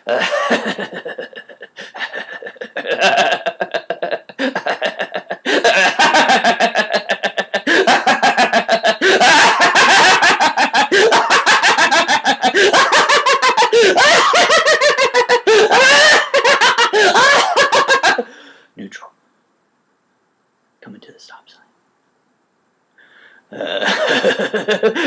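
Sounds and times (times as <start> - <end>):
man laughing: 0.0 - 18.3, 23.6 - 25.0.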